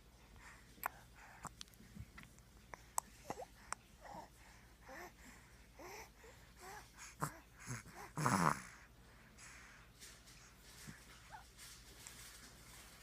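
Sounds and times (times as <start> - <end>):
squeaky wheezing snoring breaths: 3.2 - 9.8.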